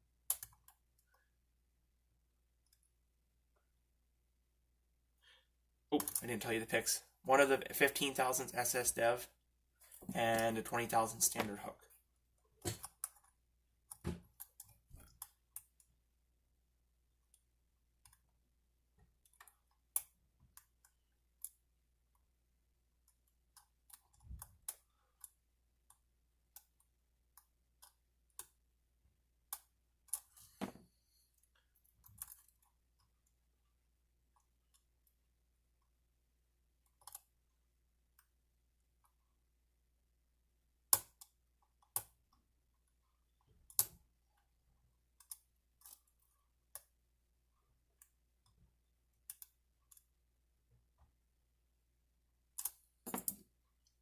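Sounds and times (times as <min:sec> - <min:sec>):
metallic clicks of lock picking: 0:52.6 - 0:53.4.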